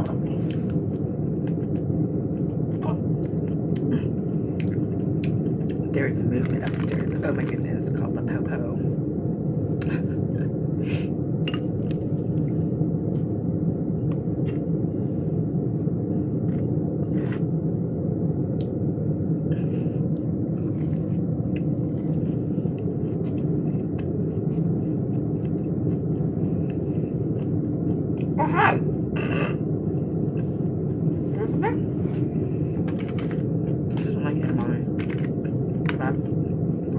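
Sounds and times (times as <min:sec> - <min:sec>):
low background rumble: 0:00.0 - 0:36.9
person eating: 0:00.2 - 0:05.9, 0:19.6 - 0:28.4.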